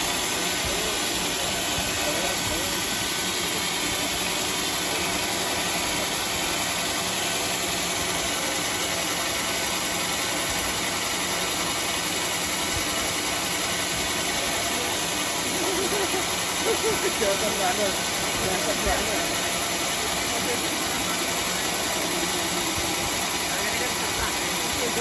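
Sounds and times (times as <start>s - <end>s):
band sawmill running: 0.0s - 25.0s.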